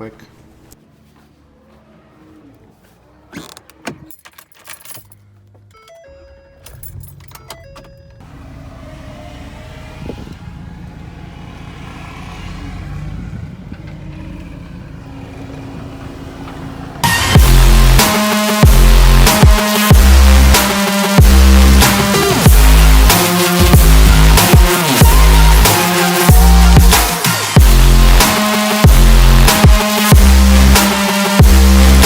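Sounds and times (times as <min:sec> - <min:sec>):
keys jangling: 0:03.9 - 0:05.9, 0:06.5 - 0:08.0
truck warning chime pinging: 0:05.7 - 0:08.4
truck engine rumbling: 0:06.7 - 0:19.3, 0:20.0 - 0:29.6, 0:30.2 - 0:32.0
electronic music with heavy bass: 0:17.0 - 0:32.0.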